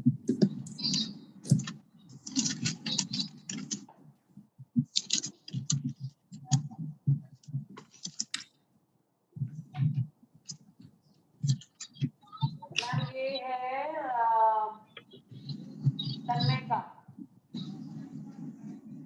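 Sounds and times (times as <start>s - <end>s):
scattered clicks and taps: 0.0s - 8.6s, 9.4s - 13.1s
faint muffled voice fragments: 11.4s - 19.0s.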